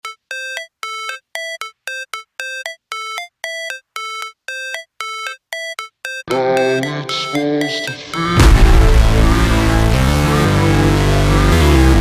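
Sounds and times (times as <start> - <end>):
synthesizer music: 6.2 - 12.0.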